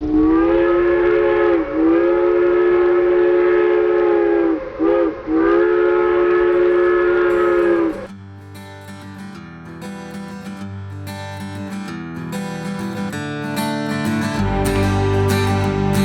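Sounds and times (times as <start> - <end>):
train chord whistle blasts: 0.3 - 8.1.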